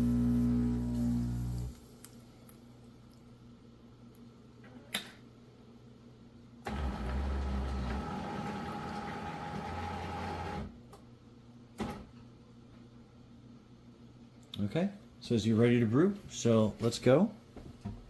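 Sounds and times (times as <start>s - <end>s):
espresso machine pump humming: 0.0s - 1.8s.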